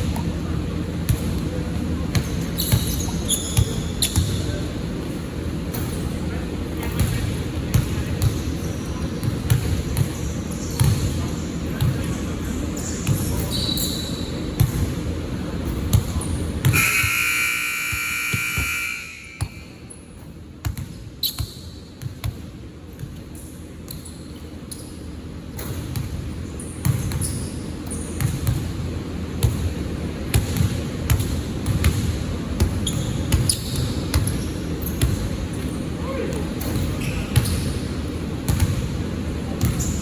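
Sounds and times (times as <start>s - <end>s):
basketball bouncing on court: 1.0s - 4.6s, 6.9s - 12.2s, 14.6s - 15.1s, 15.7s - 19.8s, 20.6s - 23.3s, 25.6s - 26.2s, 26.8s - 27.5s, 28.1s - 35.8s, 36.4s - 37.8s, 38.4s - 40.0s
sneaker squeaks: 2.2s - 4.7s, 7.8s - 14.8s, 15.9s - 20.2s, 21.2s - 22.1s, 23.4s - 25.8s, 26.4s - 28.6s, 32.6s - 36.0s, 36.6s - 38.7s, 39.6s - 40.0s
loud high-pitched tone: 16.8s - 19.6s.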